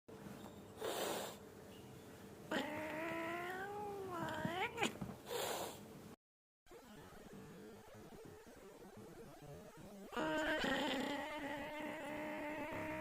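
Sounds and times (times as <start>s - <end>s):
cat yowling meow: 2.5s - 5.0s, 10.1s - 13.0s.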